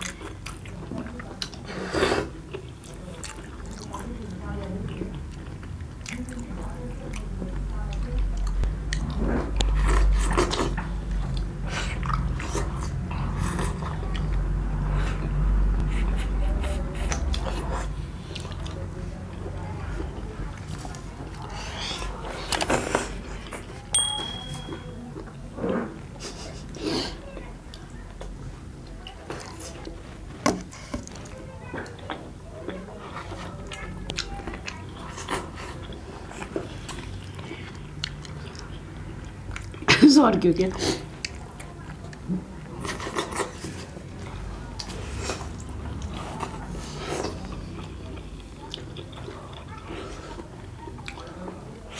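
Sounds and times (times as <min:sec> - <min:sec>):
people chewing with wet smacks: 0:00.0 - 0:23.9, 0:26.0 - 0:51.9
low steady hum: 0:02.5 - 0:25.6
chewing mouth clicks and smacks: 0:33.7 - 0:39.9.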